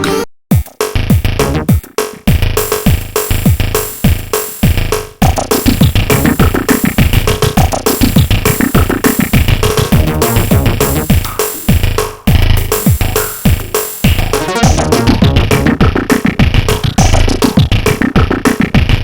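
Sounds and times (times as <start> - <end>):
synthesizer ringtone tune: 0.0 - 0.3, 10.0 - 11.1, 14.3 - 15.4
drum machine beat: 0.0 - 19.0.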